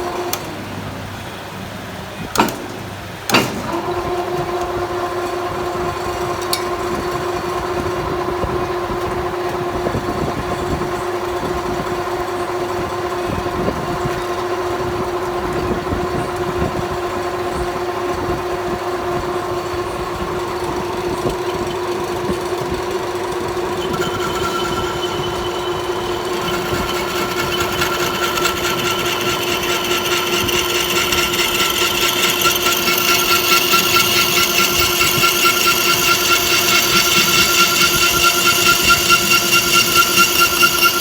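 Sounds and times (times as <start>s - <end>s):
sharp machine clunks: 2.3s - 3.8s
metal lathe humming and whining: 20.4s - 41.0s.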